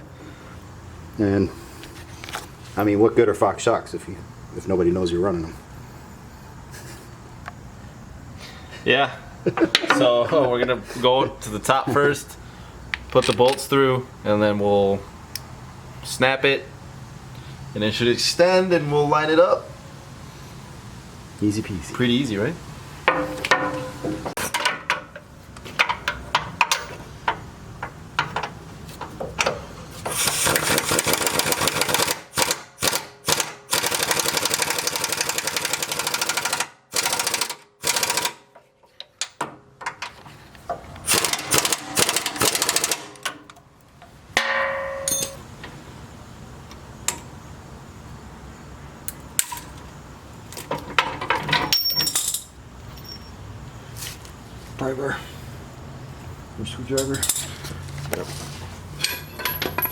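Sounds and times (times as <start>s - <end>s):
pneumatic impact wrench hammering: 29.2s - 38.5s, 40.7s - 43.5s
metal tool knocks and clinks: 44.4s - 45.5s, 51.0s - 53.4s, 59.0s - 59.9s.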